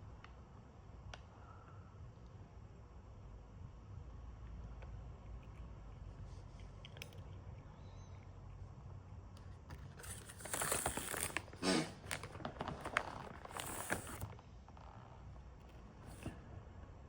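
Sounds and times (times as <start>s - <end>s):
snack packet crinkling: 10.0s - 14.3s.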